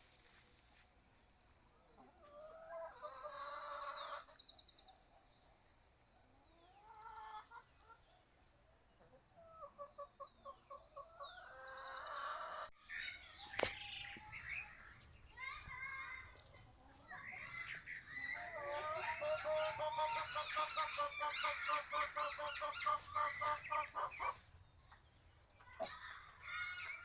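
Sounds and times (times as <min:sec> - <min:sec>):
small birds chirping: 0:00.0 - 0:27.0
chickens calling and clucking: 0:01.7 - 0:27.0.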